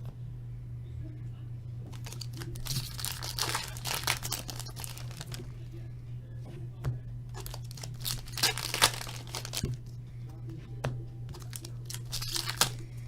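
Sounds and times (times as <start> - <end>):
low electrical hum: 0.0 - 13.0
wrappers tearing and crinkling: 1.9 - 5.5, 7.4 - 9.8, 11.4 - 13.0.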